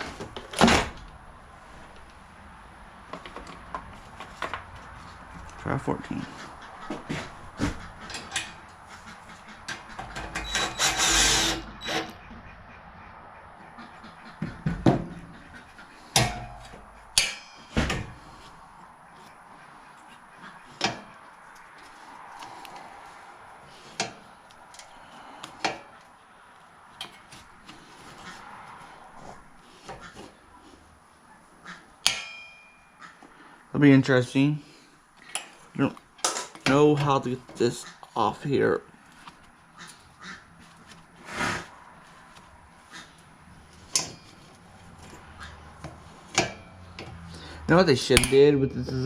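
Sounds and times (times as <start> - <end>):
metallic tool clanks: 16.2 - 17.8, 32.0 - 32.9
impact wrench hammering: 17.2 - 17.7, 32.0 - 32.7, 48.2 - 48.4.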